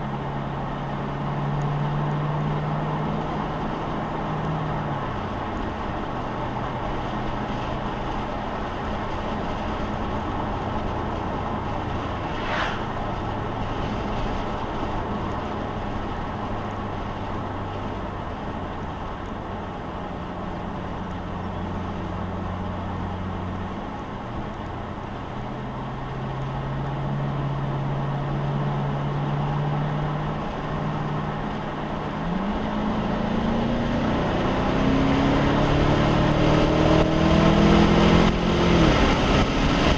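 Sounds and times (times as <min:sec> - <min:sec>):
car engine droning: 0:00.0 - 0:39.9
tyre and road noise: 0:00.0 - 0:39.9.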